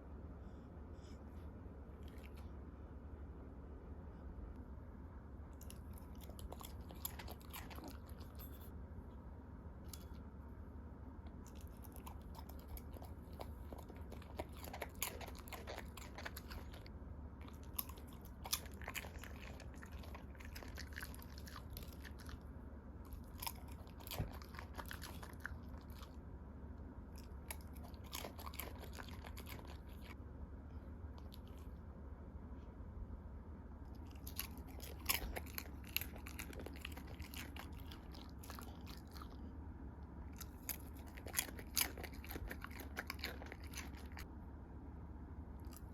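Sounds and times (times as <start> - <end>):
steady low hum: 0.0 - 45.9
dog chewing food: 5.6 - 8.7, 11.3 - 26.2, 27.1 - 30.2, 33.9 - 39.6, 40.2 - 44.3.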